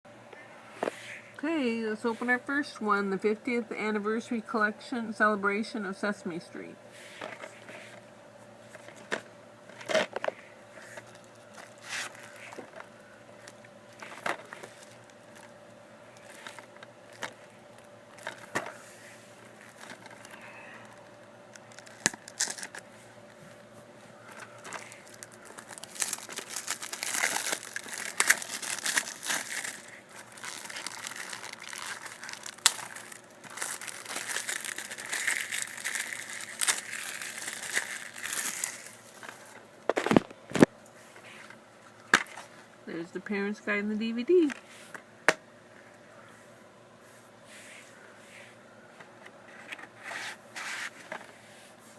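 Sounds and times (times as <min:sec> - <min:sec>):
plastic shrink-wrap crinkling: 0:08.7 - 0:18.8, 0:19.4 - 0:23.4, 0:24.2 - 0:40.7.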